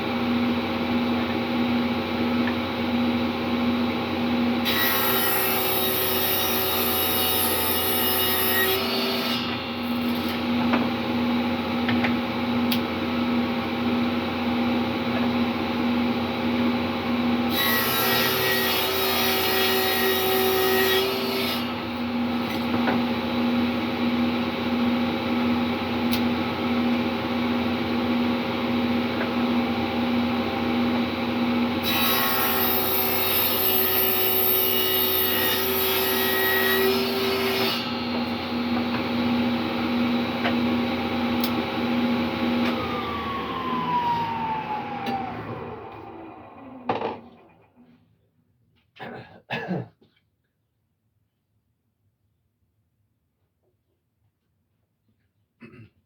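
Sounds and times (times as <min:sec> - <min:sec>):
table saw running: 0:04.4 - 0:47.7
saw blade cutting wood: 0:31.8 - 0:39.3.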